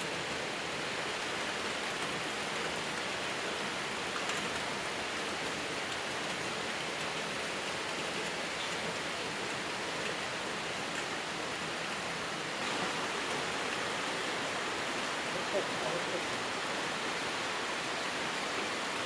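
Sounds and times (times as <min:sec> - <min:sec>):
steady rain falling: 0:00.0 - 0:19.0.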